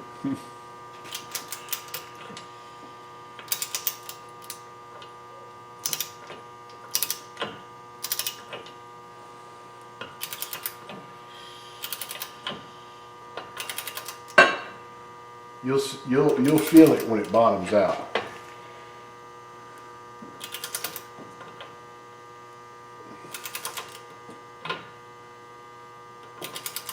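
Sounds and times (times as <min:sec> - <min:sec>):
ratchet wrench clicking: 0:01.1 - 0:02.1, 0:03.5 - 0:04.6, 0:06.9 - 0:07.2, 0:08.0 - 0:08.4, 0:10.2 - 0:10.8, 0:11.8 - 0:12.3, 0:13.6 - 0:14.3, 0:16.4 - 0:17.1.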